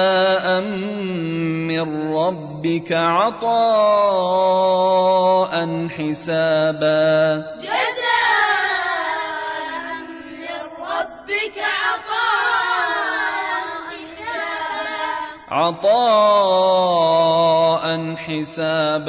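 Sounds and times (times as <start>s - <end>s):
child chanting recitation: 7.6s - 15.9s.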